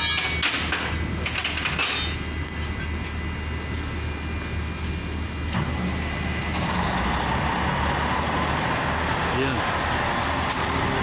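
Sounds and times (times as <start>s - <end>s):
low engine hum: 2.4s - 11.0s.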